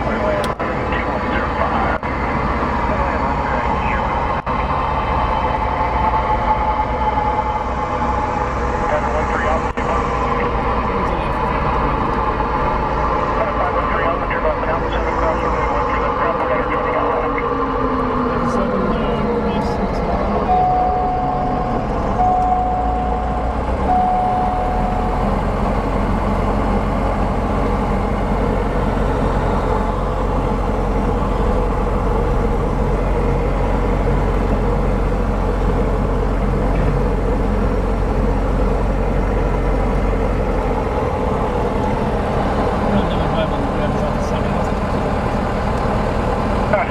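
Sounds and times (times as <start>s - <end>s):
airplane engine and propeller: 0.0s - 46.9s
cockpit tone beeps: 20.5s - 25.5s.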